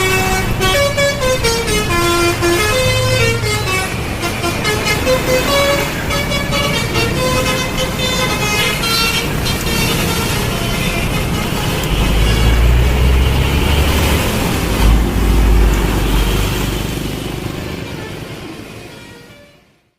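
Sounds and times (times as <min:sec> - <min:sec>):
road noise: 0:00.0 - 0:19.9
truck horn playing a tune: 0:00.0 - 0:19.9
heavy low rumble: 0:10.2 - 0:18.3.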